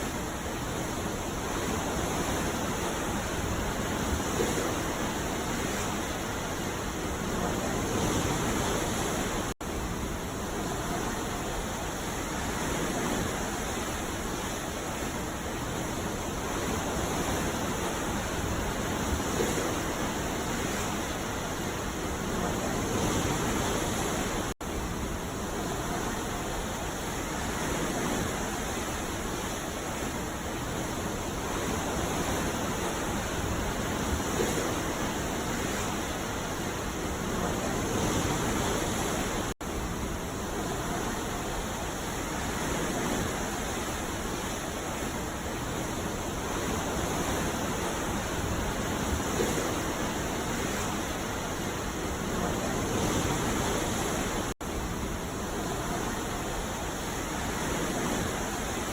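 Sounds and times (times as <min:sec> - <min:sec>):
ocean waves breaking: 0:00.0 - 0:58.9.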